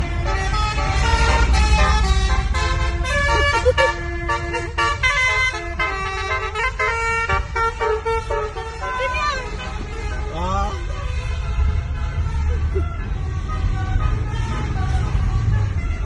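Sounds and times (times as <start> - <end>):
steady low rumble: 0.0 - 8.8
multi-tone horn melody: 0.0 - 16.0.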